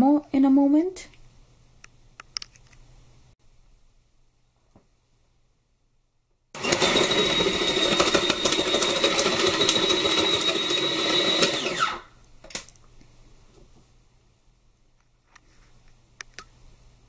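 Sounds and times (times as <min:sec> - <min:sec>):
electric motor whining: 0:06.6 - 0:12.1.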